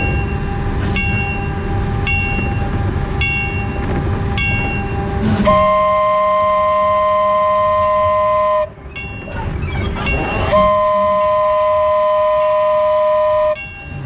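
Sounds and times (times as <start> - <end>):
train running rumble: 0.0 - 14.0
locomotive horn blasts: 4.3 - 8.8, 10.5 - 13.6.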